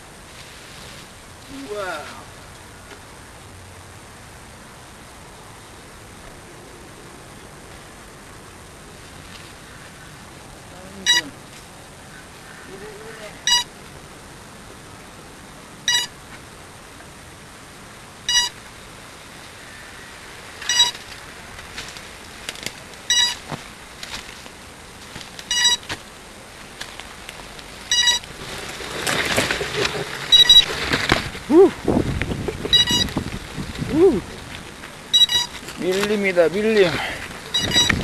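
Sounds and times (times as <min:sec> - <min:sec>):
rush of noise: 0:00.0 - 0:38.0
steady hiss: 0:00.0 - 0:38.0
electronic beeper short beeps: 0:11.0 - 0:11.3, 0:13.5 - 0:13.7, 0:15.9 - 0:16.1, 0:18.3 - 0:18.6, 0:20.7 - 0:21.0, 0:23.1 - 0:23.4, 0:25.5 - 0:25.8, 0:27.9 - 0:28.2, 0:32.7 - 0:33.1, 0:35.1 - 0:35.6, 0:37.5 - 0:37.9.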